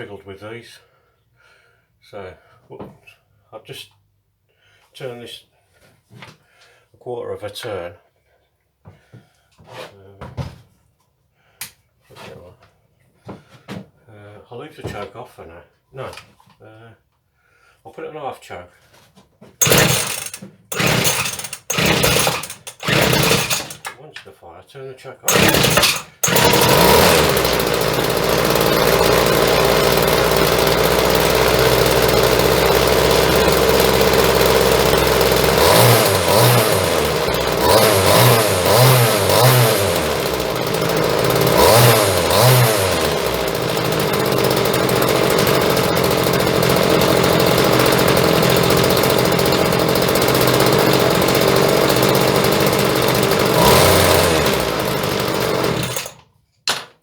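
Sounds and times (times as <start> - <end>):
strimmer engine revving: 19.6 - 24.0, 25.3 - 56.2.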